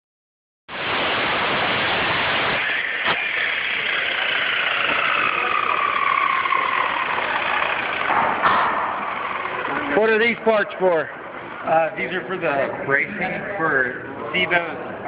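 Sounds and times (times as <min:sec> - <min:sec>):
chop saw grinding metal: 0:02.6 - 0:10.1.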